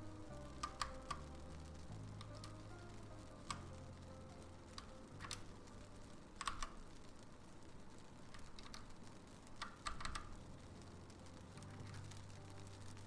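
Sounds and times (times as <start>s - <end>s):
mechanical keyboard keycaps clacking: 0.5s - 1.2s, 6.4s - 6.8s, 9.6s - 10.3s.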